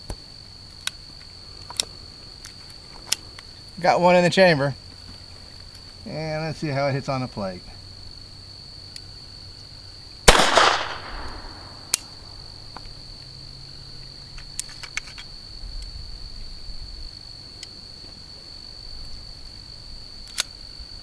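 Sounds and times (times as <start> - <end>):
insects trilling: 0.0 - 21.0
pistol shot with echo: 10.3 - 12.1
sharp click: 10.3 - 12.2.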